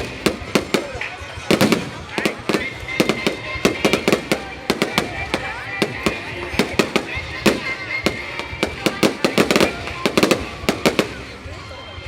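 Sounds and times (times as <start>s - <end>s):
fireworks bangs and crackles: 0.0s - 12.0s.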